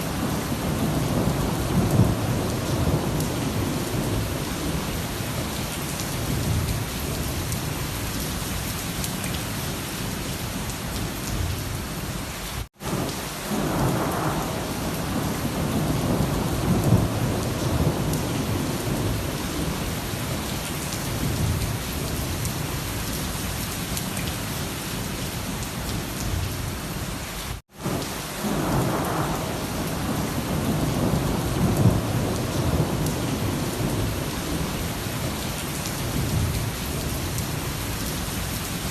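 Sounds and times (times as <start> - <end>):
rain hissing on surfaces: 0.0 - 38.9
thunder rumbling: 0.1 - 4.9, 12.9 - 22.6, 27.8 - 37.9.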